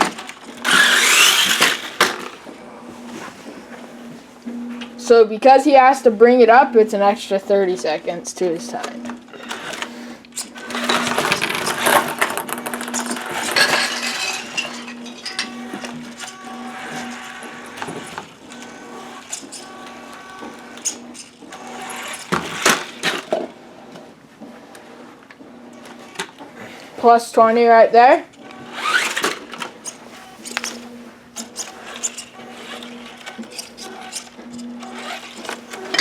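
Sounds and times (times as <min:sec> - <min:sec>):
toy truck motor whining: 0:00.0 - 0:02.4, 0:08.7 - 0:23.6, 0:28.3 - 0:36.0.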